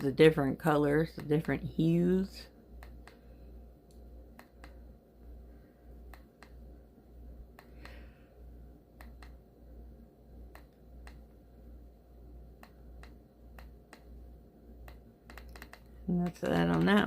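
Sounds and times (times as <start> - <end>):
faint low hum: 0.0 - 17.0
remote control buttons clicking: 2.8 - 3.2, 14.8 - 17.0.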